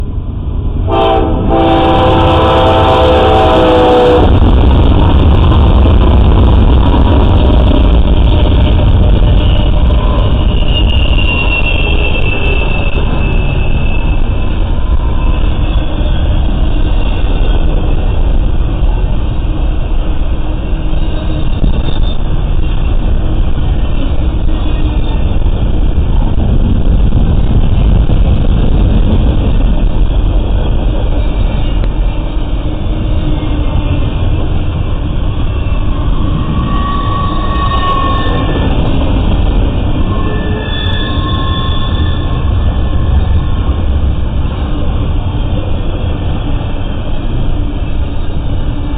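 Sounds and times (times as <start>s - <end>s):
locomotive engines and wheels rumbling: 0.0s - 48.9s
multi-chime train horn: 0.9s - 4.3s.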